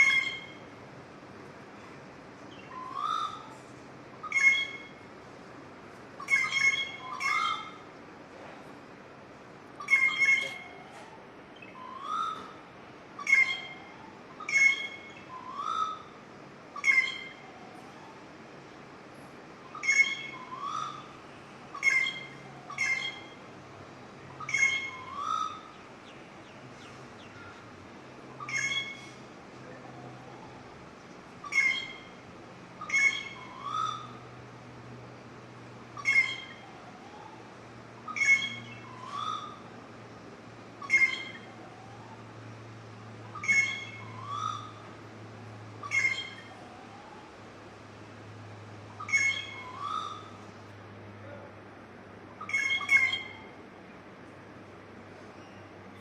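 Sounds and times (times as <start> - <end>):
birds squawking harshly: 0.0 - 0.6, 2.5 - 3.6, 4.2 - 5.1, 6.2 - 7.9, 9.8 - 11.0, 11.6 - 12.6, 13.2 - 16.2, 16.8 - 17.4, 19.6 - 23.4, 24.3 - 27.7, 28.3 - 29.2, 31.4 - 32.2, 32.8 - 34.3, 35.9 - 36.6, 38.0 - 39.8, 40.8 - 41.6, 43.3 - 44.9, 45.8 - 46.6, 48.9 - 50.4, 52.4 - 53.5
lower rising and falling bird call: 0.0 - 0.7, 2.5 - 3.6, 6.2 - 7.9, 9.8 - 12.6, 13.2 - 16.2, 16.8 - 18.1, 19.6 - 23.4, 24.3 - 34.4, 35.9 - 39.9, 40.8 - 47.4, 48.5 - 50.6, 52.3 - 53.7.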